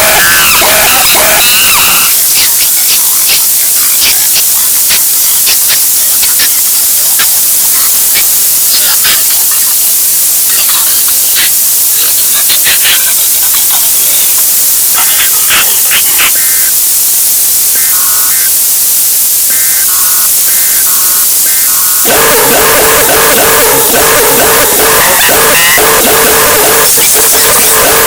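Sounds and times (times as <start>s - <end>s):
static hiss with crackles: 0.0s - 22.6s
short electronic beeps: 22.1s - 28.0s.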